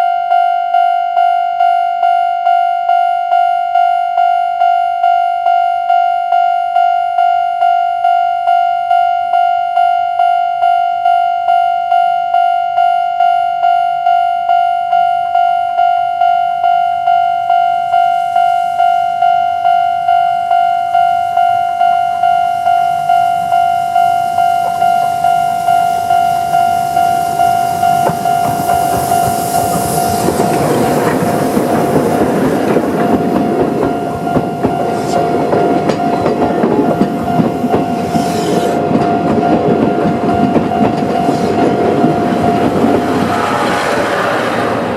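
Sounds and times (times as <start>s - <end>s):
level-crossing warning bell: 0.0s - 44.9s
approaching steam train: 17.0s - 44.9s.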